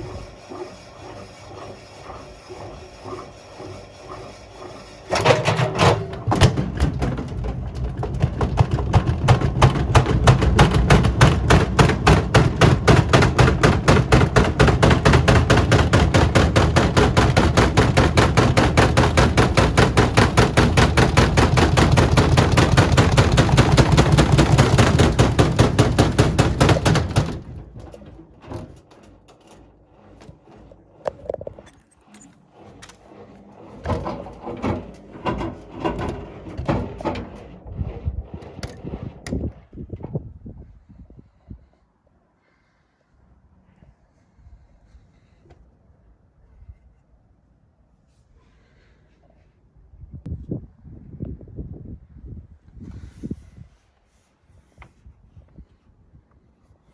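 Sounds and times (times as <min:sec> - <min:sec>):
washing machine spinning: 0:00.0 - 0:39.4.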